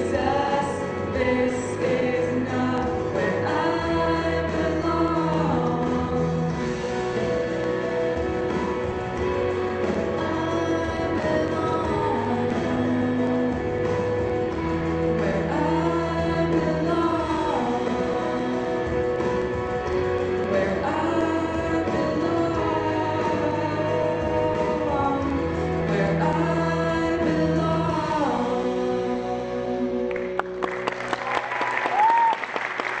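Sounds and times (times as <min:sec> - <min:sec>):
singing with instruments: 0:00.0 - 0:30.6
applause: 0:30.1 - 0:33.0.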